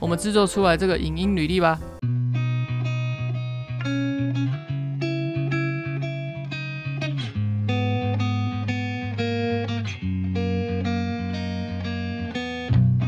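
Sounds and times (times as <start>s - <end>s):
plucked guitar music: 0.0s - 13.0s.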